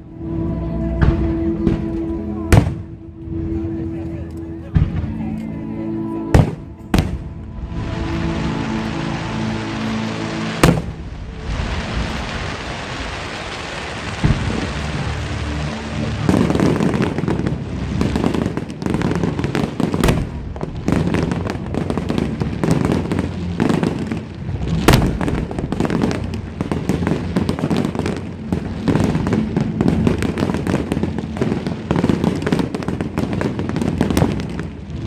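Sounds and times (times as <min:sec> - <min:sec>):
fireworks bursting and crackling: 0:01.0 - 0:02.9, 0:06.4 - 0:35.0
loud firework bang: 0:10.6 - 0:12.1.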